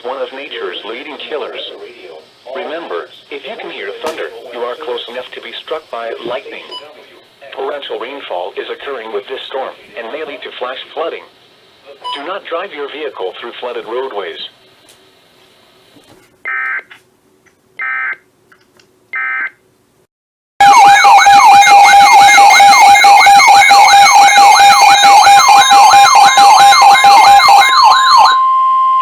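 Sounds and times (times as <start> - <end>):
steady warning tone: 20.6 - 29.0
wailing siren alarm: 20.6 - 29.0.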